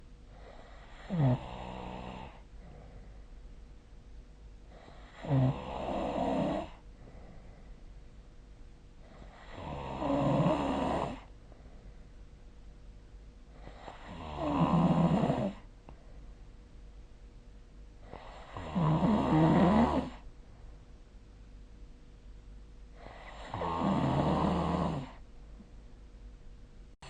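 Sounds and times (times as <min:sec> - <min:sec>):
person snoring: 0:00.4 - 0:02.4, 0:04.7 - 0:06.8, 0:09.2 - 0:11.3, 0:13.6 - 0:15.7, 0:18.0 - 0:20.2, 0:23.0 - 0:25.2.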